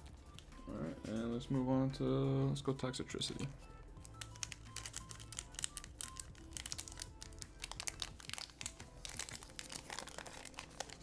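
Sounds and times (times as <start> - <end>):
foil wrapper crinkling: 4.0 - 11.0.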